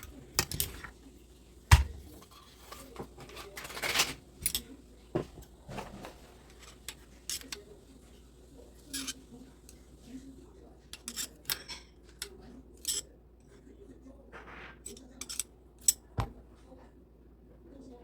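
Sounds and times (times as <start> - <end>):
metal parts clicking and clinking: 2.2 - 4.7.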